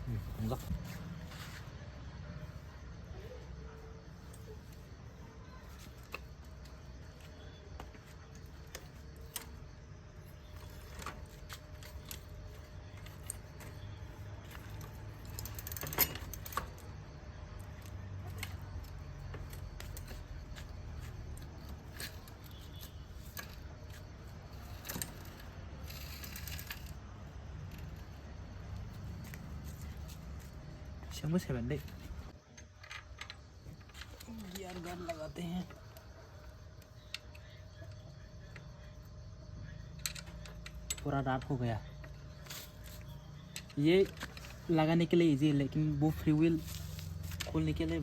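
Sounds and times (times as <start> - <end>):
light metallic clicks and clinks: 10.4 - 27.0, 39.8 - 48.0.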